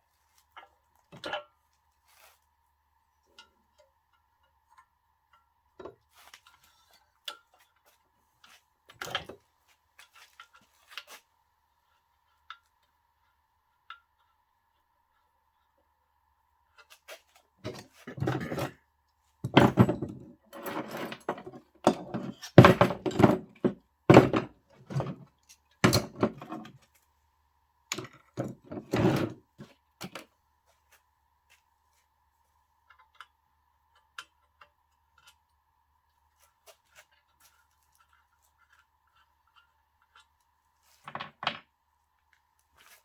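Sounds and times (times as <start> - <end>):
clunks and knocks of parts: 17.6 - 18.8, 19.4 - 26.8, 27.9 - 30.2, 41.0 - 41.7.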